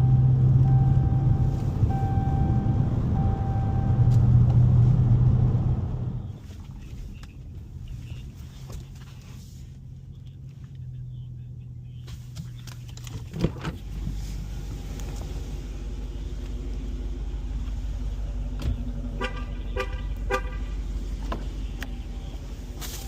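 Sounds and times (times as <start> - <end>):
short pitched beeps: 0.0 - 4.1
car rumble: 0.0 - 23.0.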